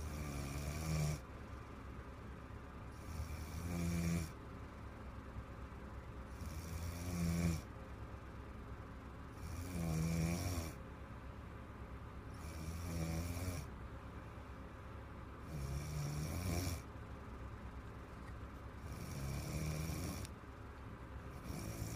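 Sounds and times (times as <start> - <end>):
woman snoring: 0.0 - 1.2, 3.0 - 4.4, 6.3 - 7.7, 9.4 - 10.8, 12.3 - 13.7, 15.4 - 16.9, 18.8 - 20.3, 21.4 - 21.9.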